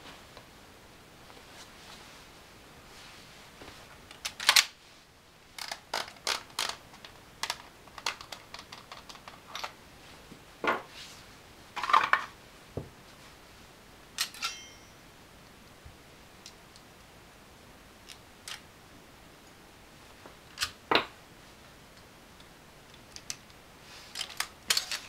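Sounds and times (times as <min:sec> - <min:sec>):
short metallic ring: 0:14.3 - 0:15.0
metallic clicks of gun parts: 0:24.2 - 0:25.0.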